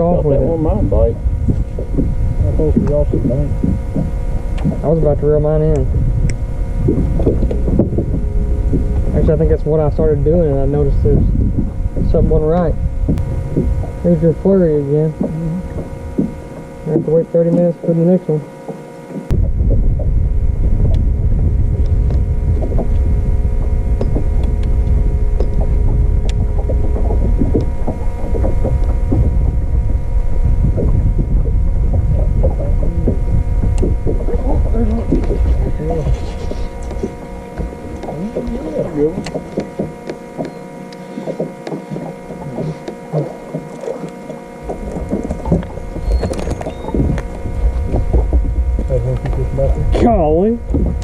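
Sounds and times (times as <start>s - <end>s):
outboard motor droning: 0.0s - 51.0s
wind rumble on microphone: 0.0s - 51.0s.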